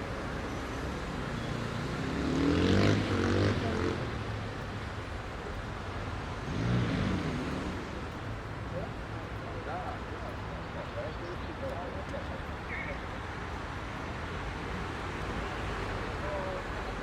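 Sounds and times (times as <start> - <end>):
heavy traffic hum: 0.0 - 17.0.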